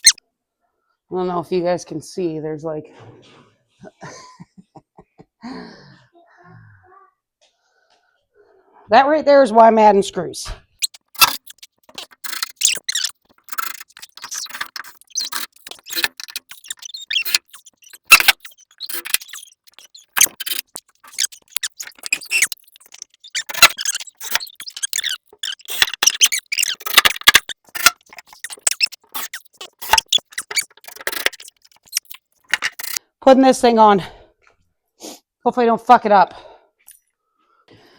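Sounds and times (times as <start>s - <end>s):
clicks scrapes and squeaks: 0.0s - 0.2s, 10.8s - 33.0s
metallic rattles of screws: 10.8s - 33.0s.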